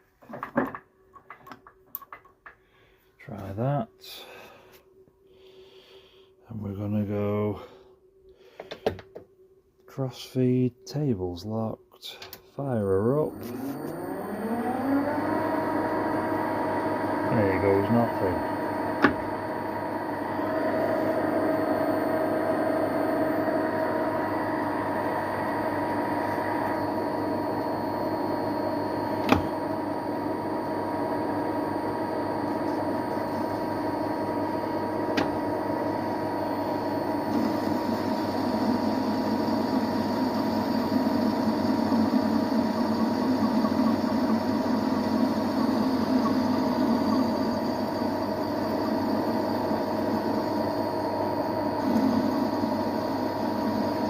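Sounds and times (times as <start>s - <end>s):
metal lathe running: 13.1s - 54.0s.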